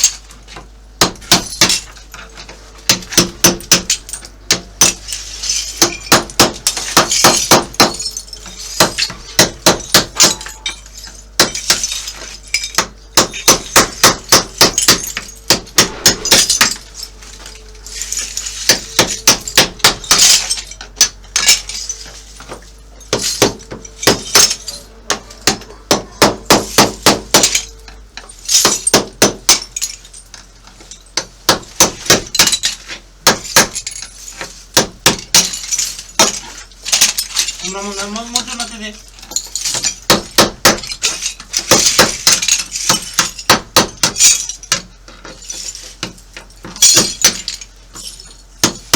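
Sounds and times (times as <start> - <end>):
hammer striking chisel: 5.8 - 8.1, 8.8 - 10.7, 12.8 - 16.8, 18.7 - 21.1, 23.1 - 27.7, 33.2 - 33.8, 39.7 - 44.9, 48.6 - 48.9.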